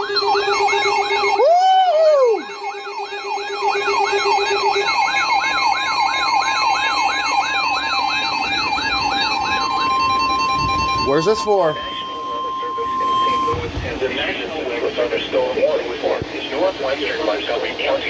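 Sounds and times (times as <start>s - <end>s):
electronic siren yelping: 0.0s - 13.7s
steady higher tone: 0.0s - 15.9s
steady lower tone: 0.0s - 18.0s.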